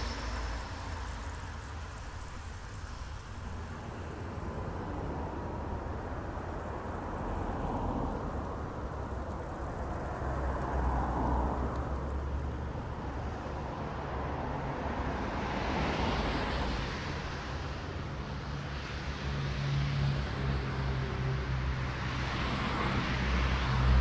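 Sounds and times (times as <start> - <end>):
cars passing: 0.0 - 24.0.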